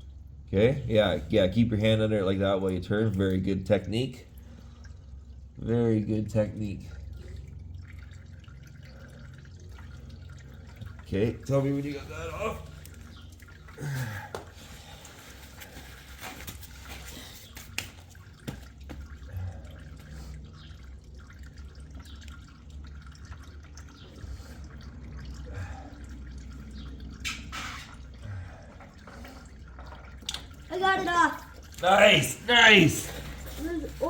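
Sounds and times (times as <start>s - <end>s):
oil dripping and trickling: 0.0s - 34.0s.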